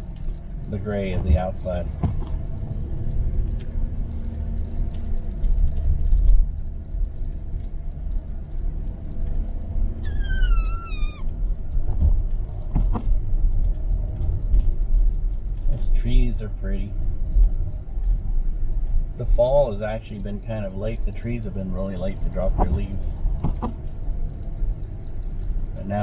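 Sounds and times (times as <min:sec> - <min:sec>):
car engine and tyre rumble: 0:00.0 - 0:26.0
high wavering squeal: 0:10.0 - 0:11.3.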